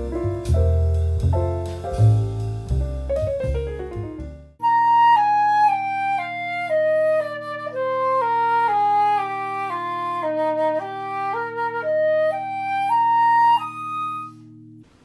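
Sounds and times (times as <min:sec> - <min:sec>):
jazzy piano music: 0:00.0 - 0:14.9
flute melody: 0:03.4 - 0:14.8.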